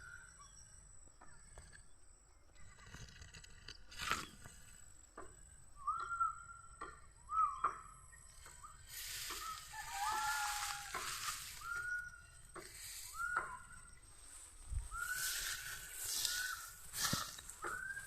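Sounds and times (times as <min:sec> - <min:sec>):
hissing rustle: 0:08.9 - 0:11.9
short high-pitched animal calls: 0:09.0 - 0:12.0.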